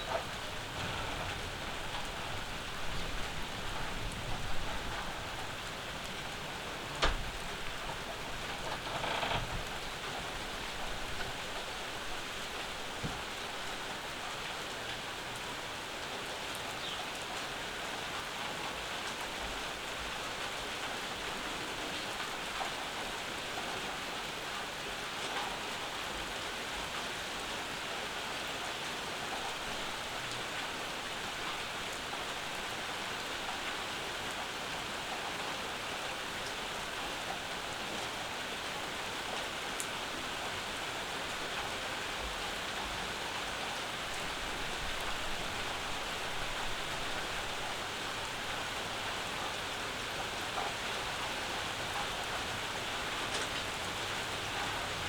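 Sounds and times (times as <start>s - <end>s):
raindrop ticks: 0.0s - 13.3s, 48.5s - 55.0s
steady rainfall: 0.0s - 55.0s.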